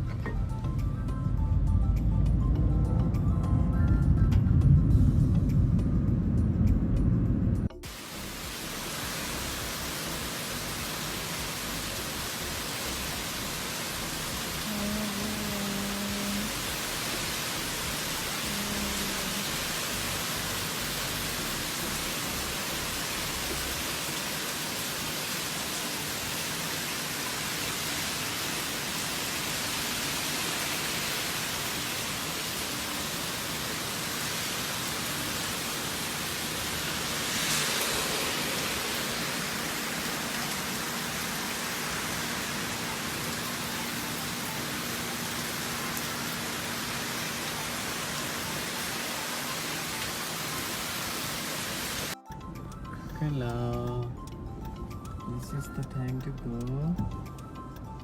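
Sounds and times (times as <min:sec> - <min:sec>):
heavy rain falling: 0:07.8 - 0:52.2.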